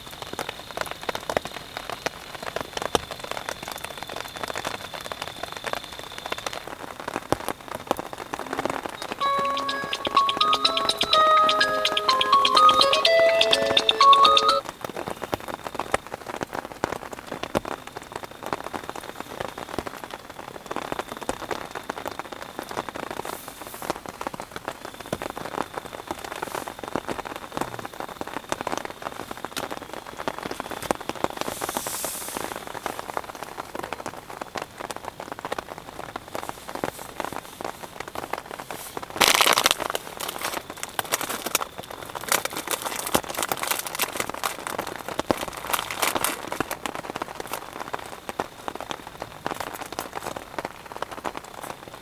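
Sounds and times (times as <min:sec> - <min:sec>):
rain drops striking surface: 0:00.0 - 0:14.7, 0:15.3 - 0:52.0
faint high tone: 0:09.2 - 0:14.6.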